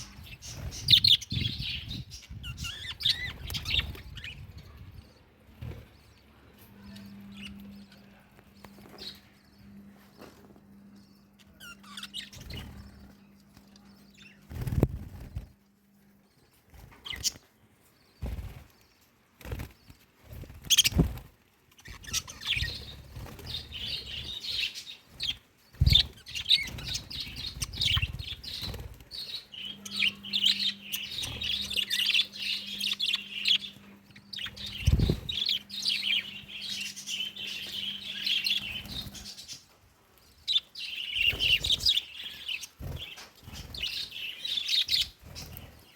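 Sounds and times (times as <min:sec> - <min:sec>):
budgerigars chattering: 0:25.9 - 0:39.6.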